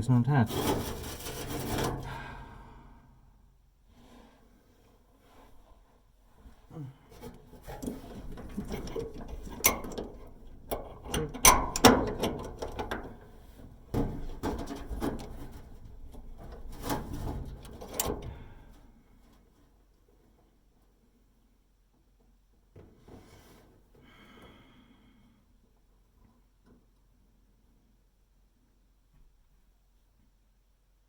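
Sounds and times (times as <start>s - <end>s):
sharp metal clicks and knocks: 7.8s - 13.2s, 16.2s - 18.3s.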